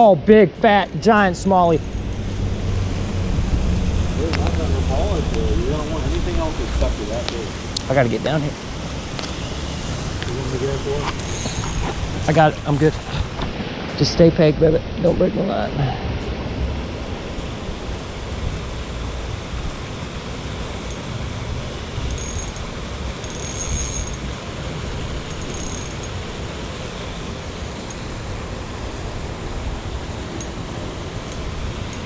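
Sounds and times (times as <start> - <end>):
wind buffeting microphone: 1.2 - 14.0.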